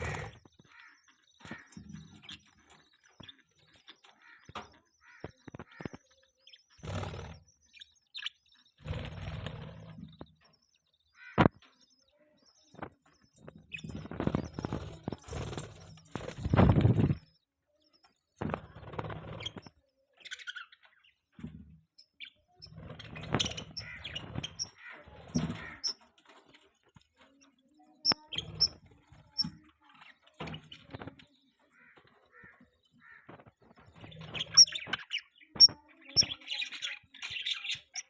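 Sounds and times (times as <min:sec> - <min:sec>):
budgerigars chirping and warbling: 0:18.5 - 0:26.0, 0:28.0 - 0:38.0.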